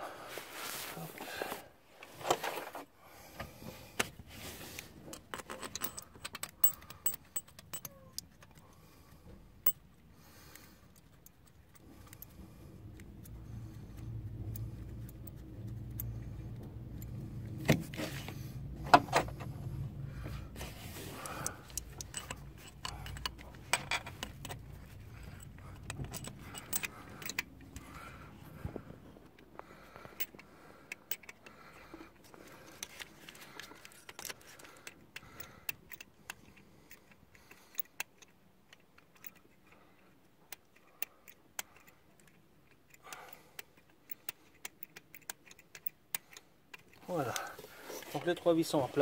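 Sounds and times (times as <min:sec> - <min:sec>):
wrench and bolts clinking: 0:05.1 - 0:08.6, 0:21.2 - 0:28.0
low rumble: 0:11.9 - 0:29.7.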